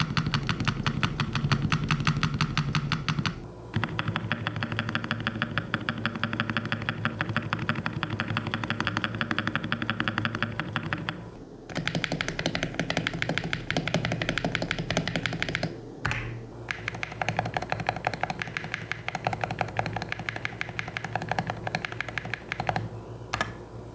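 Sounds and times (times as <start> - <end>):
fast keyboard typing clacks: 0.0 - 23.6.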